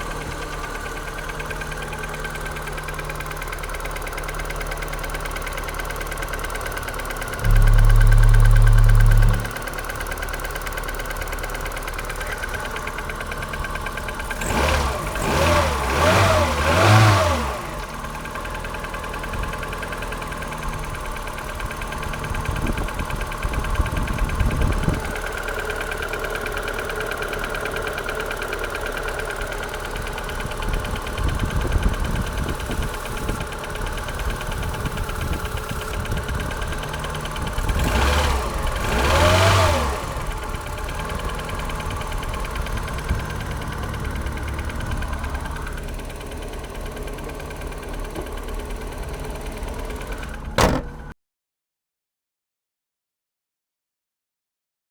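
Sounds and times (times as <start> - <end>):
knocking engine idling: 0.0 - 51.1
engine revving: 7.3 - 11.2, 14.2 - 18.1, 36.8 - 47.9.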